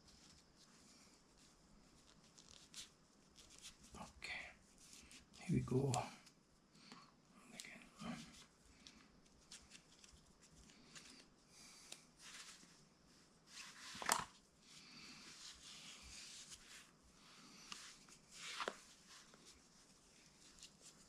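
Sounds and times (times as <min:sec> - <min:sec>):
lace scraping and rustling: 0:00.0 - 0:04.0, 0:12.1 - 0:21.0.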